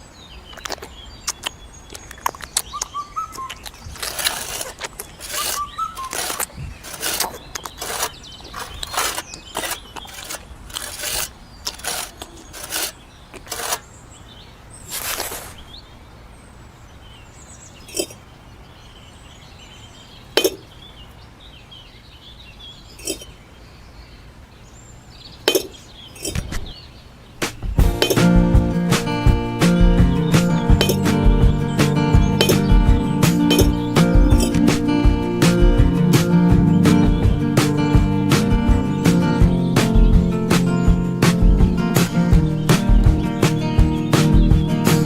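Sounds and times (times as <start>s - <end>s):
faint bird chirps: 0.0s - 28.3s
small hard pieces clicking: 3.6s - 13.8s.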